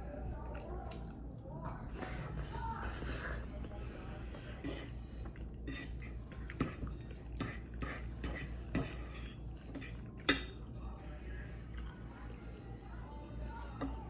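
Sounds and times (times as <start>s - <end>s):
cutlery clinking on a plate: 5.7s - 10.6s.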